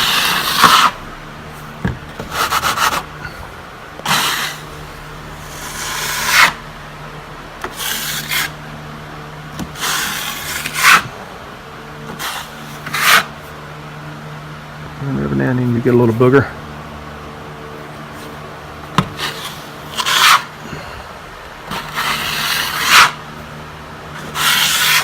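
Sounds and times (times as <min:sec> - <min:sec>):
trowel scraping wall: 0:00.0 - 0:01.0, 0:01.6 - 0:06.7, 0:07.6 - 0:08.6, 0:09.6 - 0:11.2, 0:12.0 - 0:13.4, 0:19.0 - 0:20.9, 0:21.6 - 0:23.4, 0:24.2 - 0:25.0.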